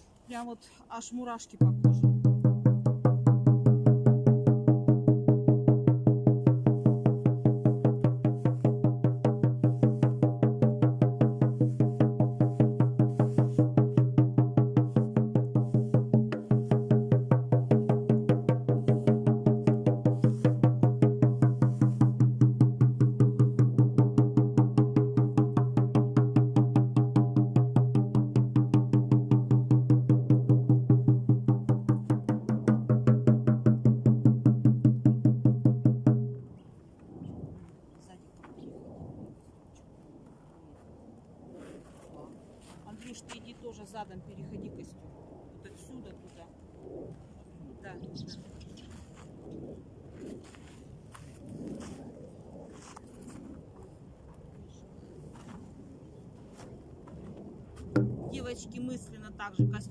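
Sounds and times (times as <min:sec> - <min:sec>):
fast even beat: 0:01.6 - 0:36.4, 0:58.0 - 0:59.9.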